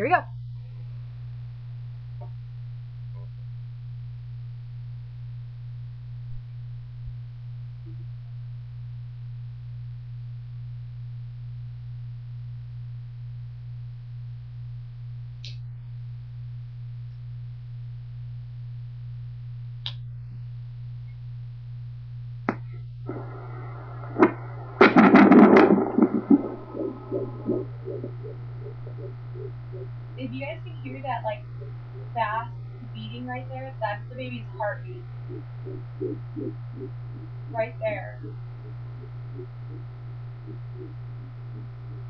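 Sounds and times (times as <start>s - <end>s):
doppler speaker low hum: 0.0s - 42.0s
probe knocks: 24.1s - 33.0s, 34.6s - 42.0s.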